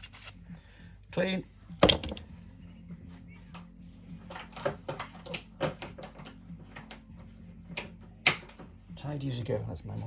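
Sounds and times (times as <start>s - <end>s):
knocks and scrapes of chainsaw parts: 1.8s - 2.4s.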